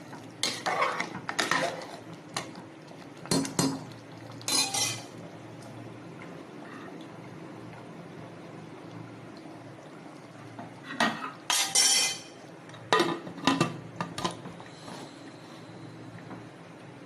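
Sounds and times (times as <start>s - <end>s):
low background noise: 0.0s - 17.0s
metal cookware clattering: 4.5s - 5.1s, 11.0s - 12.4s.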